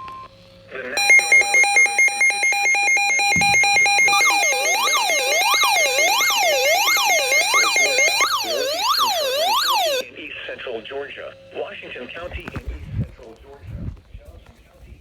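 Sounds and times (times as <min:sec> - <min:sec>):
rapid pulsing beeps: 0:01.0 - 0:10.0
siren-like sweeping tone: 0:01.0 - 0:10.0.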